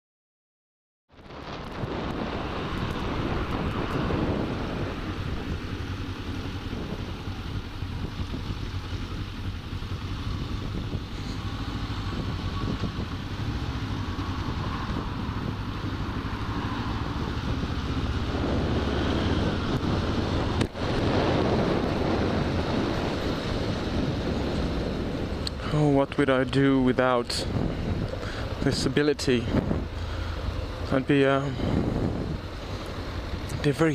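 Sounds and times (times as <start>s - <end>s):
wind noise on microphone: 1.1s - 33.9s
motorcycle engine running: 1.2s - 33.9s.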